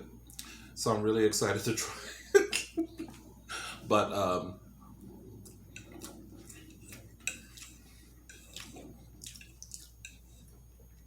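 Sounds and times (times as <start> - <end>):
mouth chewing smacks: 5.4 - 10.1.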